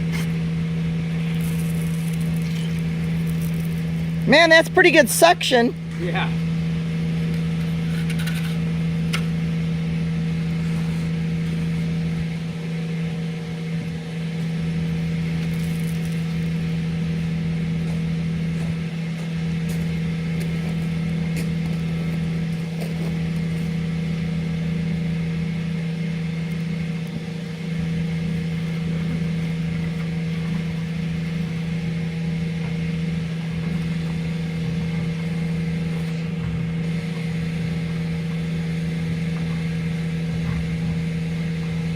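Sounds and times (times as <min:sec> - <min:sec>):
hose sucking water: 0:00.0 - 0:04.3
vacuum pump truck humming: 0:00.0 - 0:41.9.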